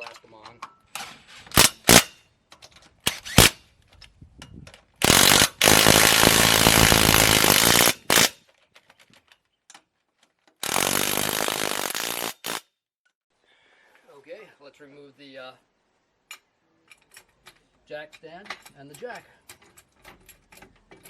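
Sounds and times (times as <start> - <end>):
impact wrench hammering: 1.6 - 2.1, 5.0 - 8.4, 10.6 - 12.6.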